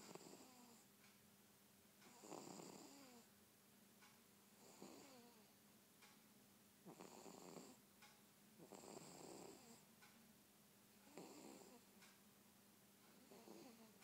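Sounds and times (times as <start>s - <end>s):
faint rasping snoring: 0.0s - 0.8s, 2.1s - 3.3s, 4.6s - 5.5s, 6.9s - 7.8s, 8.6s - 9.8s, 11.0s - 11.8s, 13.1s - 14.0s.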